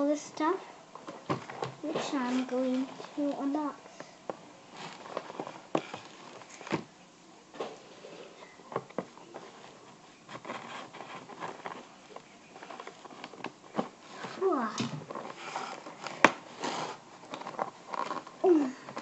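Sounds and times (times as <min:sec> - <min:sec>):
toy packaging crinkling: 0:15.1 - 0:19.0.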